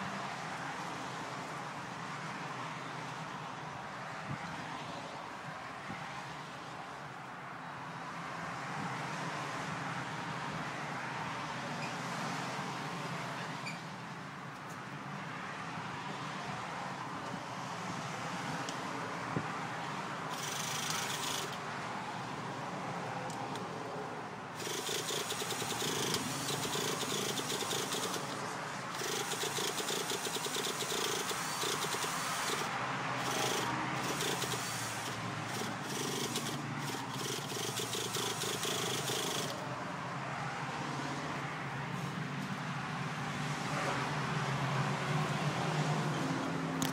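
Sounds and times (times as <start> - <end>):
small engine starter buzzing: 20.3 - 21.6, 24.6 - 39.6.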